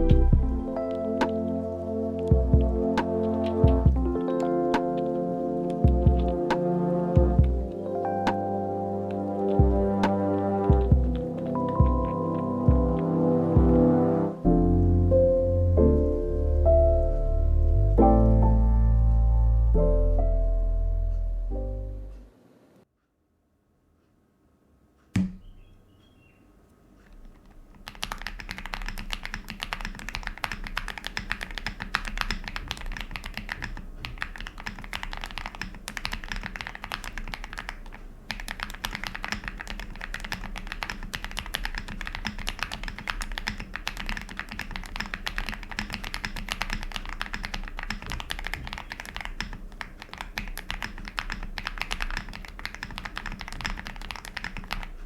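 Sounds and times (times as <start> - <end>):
fast mechanical keyboard typing: 2.1 - 8.4, 9.1 - 13.7, 27.2 - 55.0.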